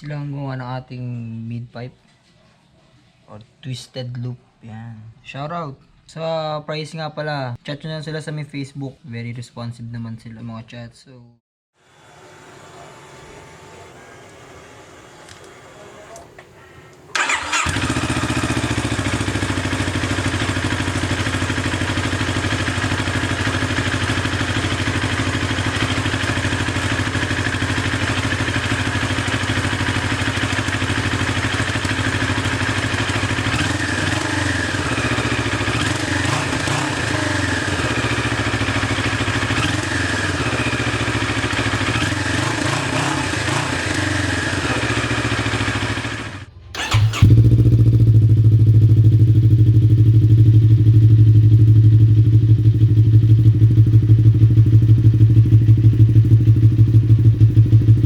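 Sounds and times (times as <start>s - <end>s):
motorcycle engine idling: 17.2s - 58.0s.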